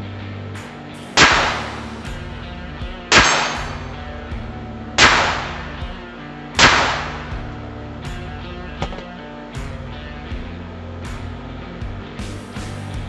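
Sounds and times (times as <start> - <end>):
background music: 0.0 - 13.0
pistol shots: 1.2 - 2.1, 3.1 - 3.9, 5.0 - 5.8, 6.6 - 7.5.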